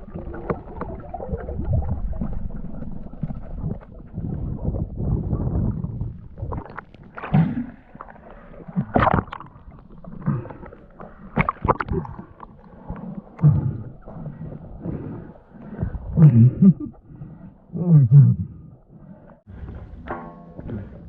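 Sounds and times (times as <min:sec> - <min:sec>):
water sloshing and gurgling: 0:00.0 - 0:21.0
sharp knocks and splashes: 0:05.2 - 0:09.7, 0:11.3 - 0:12.6.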